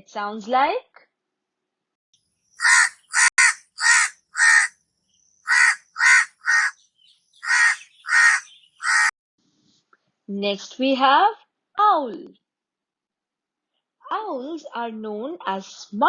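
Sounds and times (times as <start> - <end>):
crow cawing: 2.6 - 4.7, 5.5 - 6.8, 7.4 - 9.1.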